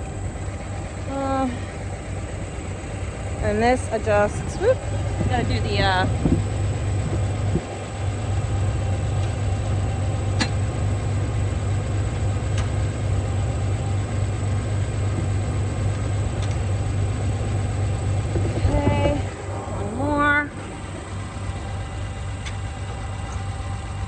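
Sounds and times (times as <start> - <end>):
tractor engine idling: 0.0 - 24.0.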